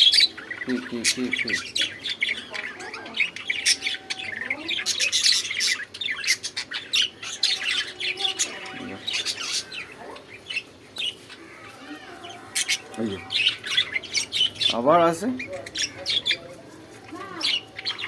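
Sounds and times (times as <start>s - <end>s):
bird squawking and chirping: 0.0s - 18.0s.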